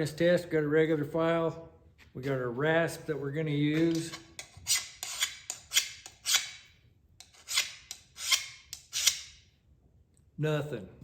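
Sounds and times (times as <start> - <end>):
file scraping across steel: 3.7 - 9.4.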